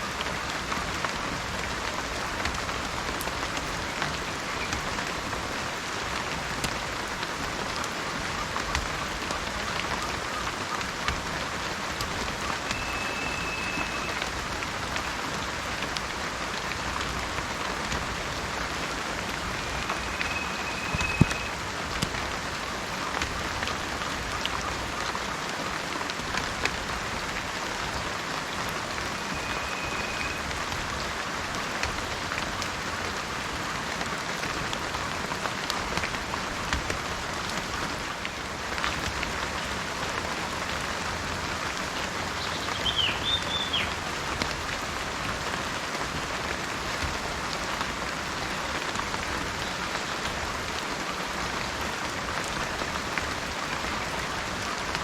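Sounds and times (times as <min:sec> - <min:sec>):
rain falling: 0:00.0 - 0:55.0
rain drop ticks: 0:00.1 - 0:51.1
high whistled notes: 0:12.7 - 0:14.2, 0:19.6 - 0:21.6, 0:29.3 - 0:30.5.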